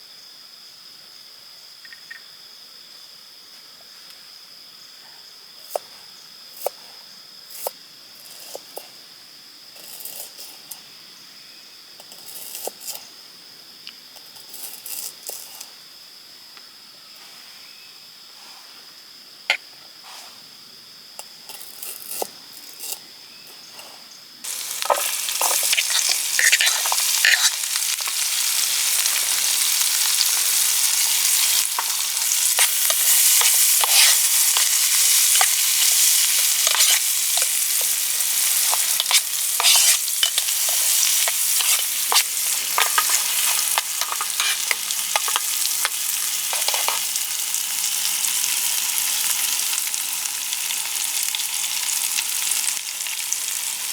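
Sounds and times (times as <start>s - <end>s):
food sizzling in a pan: 24.4s - 53.9s
utensil stirring in a pan: 24.5s - 48.6s.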